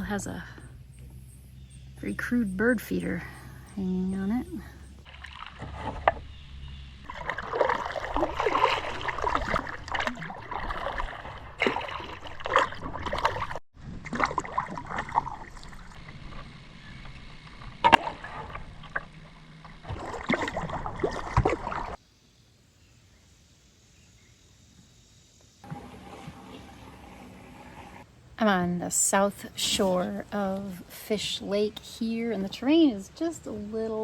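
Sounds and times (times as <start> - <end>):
paddle strokes splashing water: 4.7 - 22.0, 25.6 - 28.1.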